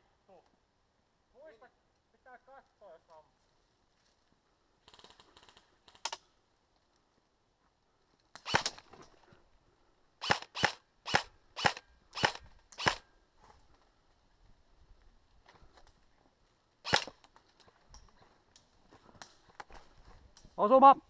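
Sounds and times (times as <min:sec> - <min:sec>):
airsoft gun shots: 0:08.4 - 0:08.8, 0:10.2 - 0:13.0, 0:16.9 - 0:17.1.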